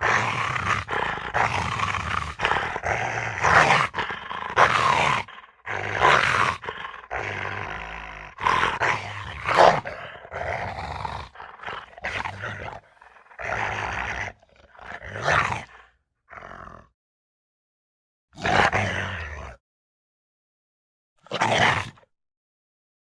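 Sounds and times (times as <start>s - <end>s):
animal growls and roars: 0.0s - 17.0s, 18.4s - 19.6s, 21.2s - 22.1s.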